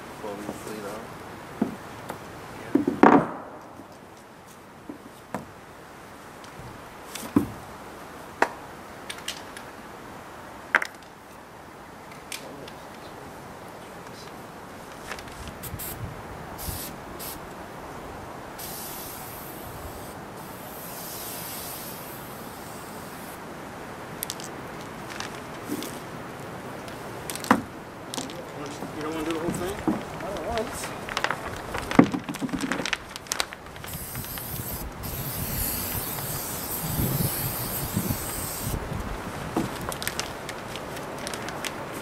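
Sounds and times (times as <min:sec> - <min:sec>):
high hissing rustle: 0:14.1 - 0:17.5, 0:18.4 - 0:23.5, 0:24.2 - 0:27.5, 0:28.2 - 0:42.0.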